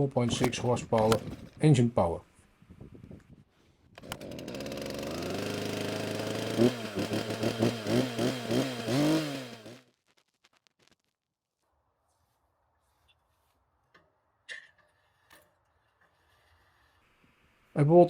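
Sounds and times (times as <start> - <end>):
chainsaw running and revving: 4.0 - 9.8.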